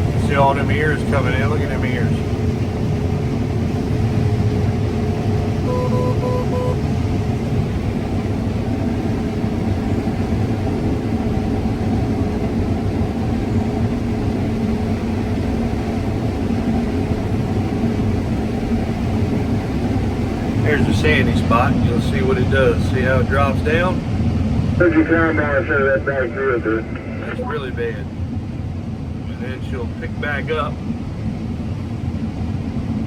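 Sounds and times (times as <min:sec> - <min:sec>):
combine harvester engine drone: 0:00.0 - 0:33.0
short electronic beeps: 0:05.6 - 0:06.8.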